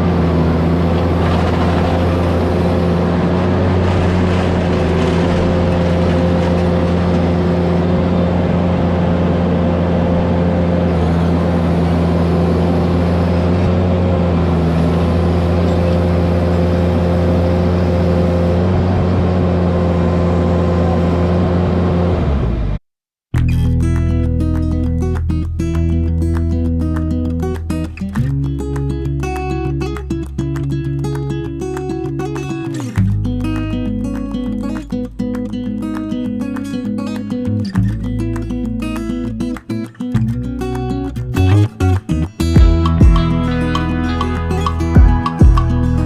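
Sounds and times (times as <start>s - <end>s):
noisy clatter: 0.0s - 10.1s
engine running at high revs: 0.0s - 22.8s.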